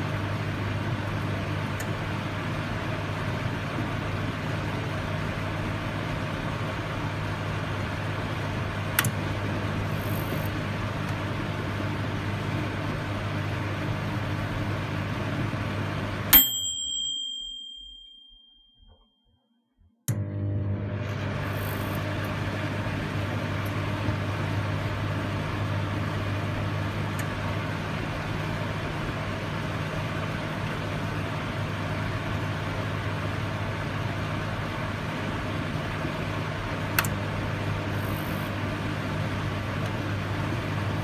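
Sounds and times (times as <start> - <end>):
microwave oven humming: 0.0 - 18.4, 20.1 - 41.0
microwave click: 8.8 - 9.4, 20.1 - 22.7, 36.9 - 37.3
microwave ding: 16.3 - 19.2.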